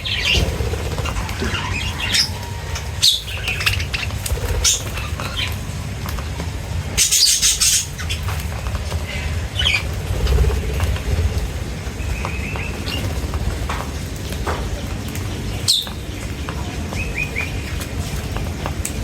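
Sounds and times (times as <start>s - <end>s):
small birds chirping: 0.0s - 19.0s
low rumble: 8.4s - 14.5s.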